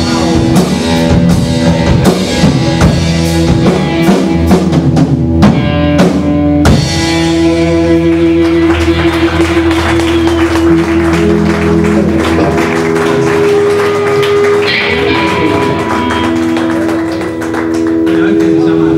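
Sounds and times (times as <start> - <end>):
instrumental rock band: 0.0 - 18.9.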